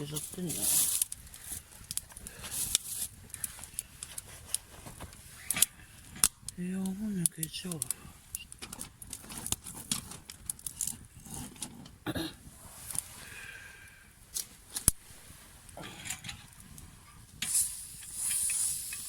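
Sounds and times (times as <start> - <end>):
short hiss: 17.4 - 19.0.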